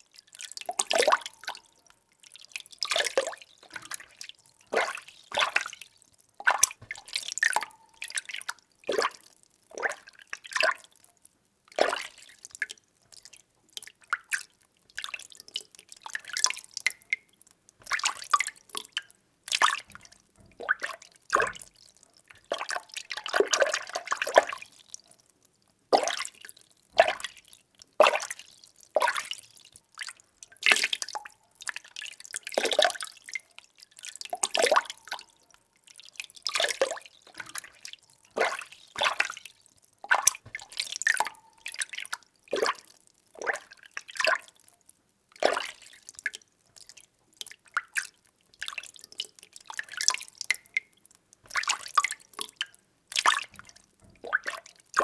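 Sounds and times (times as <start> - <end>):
water sloshing and splashing: 2.8 - 10.8, 17.8 - 24.7, 36.0 - 44.5, 51.5 - 55.0.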